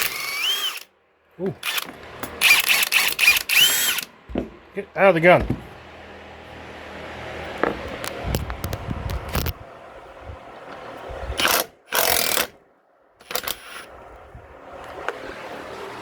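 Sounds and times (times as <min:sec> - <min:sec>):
impact wrench hammering: 0:01.6 - 0:04.7, 0:05.3 - 0:05.8.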